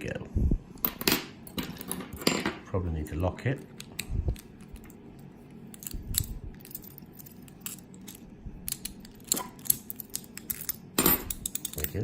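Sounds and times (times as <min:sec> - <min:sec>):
padlock clicks and rattles: 0:05.8 - 0:12.0.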